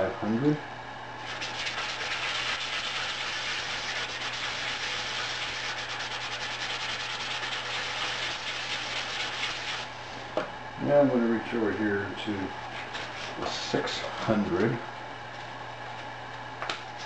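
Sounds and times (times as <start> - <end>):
wet sandpaper rubbing on plastic: 1.3 - 9.9.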